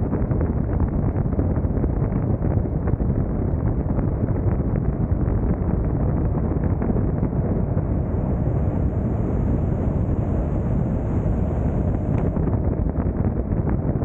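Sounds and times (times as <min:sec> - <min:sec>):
car wind and road noise: 0:05.1 - 0:13.6.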